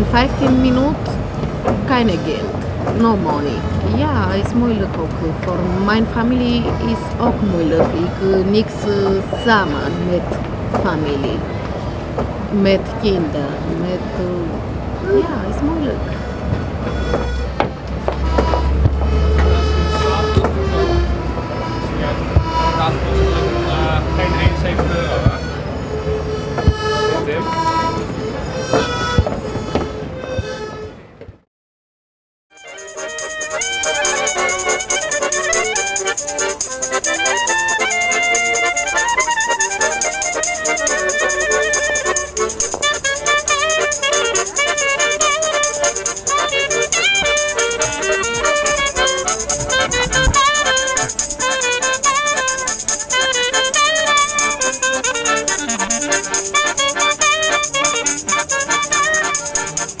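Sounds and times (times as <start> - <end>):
fiddle-like melody: 0.0 - 31.2, 32.5 - 60.0
instrumental music: 15.0 - 31.4, 32.5 - 60.0
fast rattling percussion: 32.6 - 60.0.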